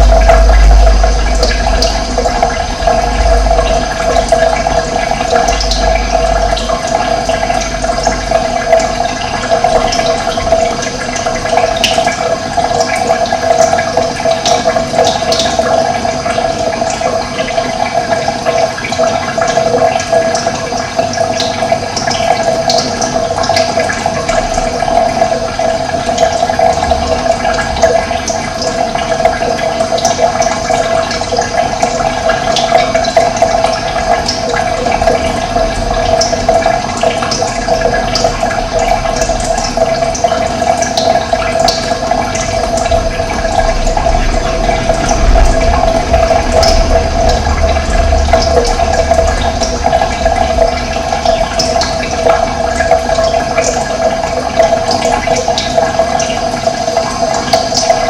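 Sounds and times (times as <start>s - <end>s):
low rumble: 0.0s - 8.3s, 42.6s - 52.6s
running water: 0.0s - 58.0s.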